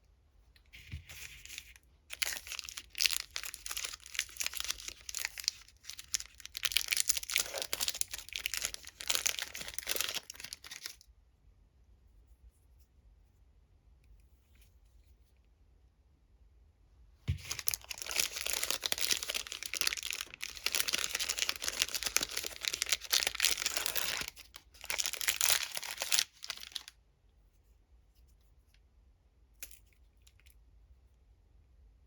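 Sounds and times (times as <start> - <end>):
candy wrapper crinkling: 0.8 - 11.0, 17.4 - 27.0.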